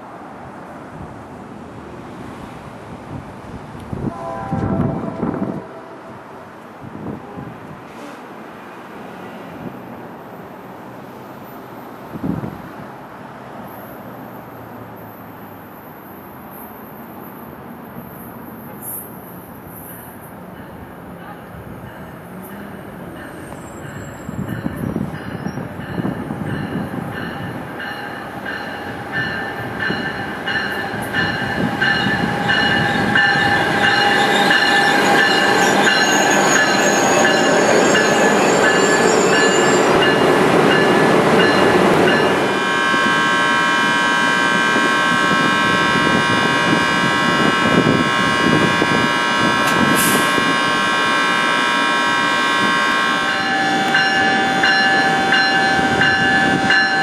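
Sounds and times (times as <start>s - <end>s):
train rumble and wheel clatter: 0.0s - 57.0s
wheel and brake squeals: 22.6s - 25.7s, 31.9s - 40.2s
shrill held tones: 53.1s - 57.0s.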